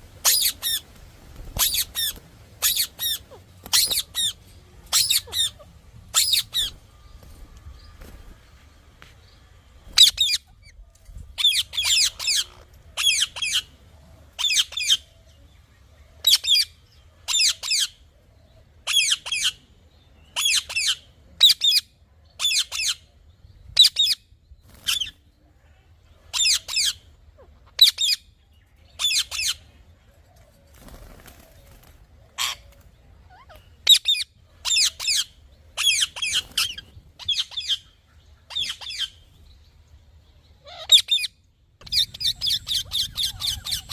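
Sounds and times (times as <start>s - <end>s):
parrot chirping shrilly: 0.2s - 0.8s, 1.6s - 6.8s, 10.0s - 10.7s, 33.4s - 37.8s, 38.5s - 39.2s, 40.6s - 43.9s.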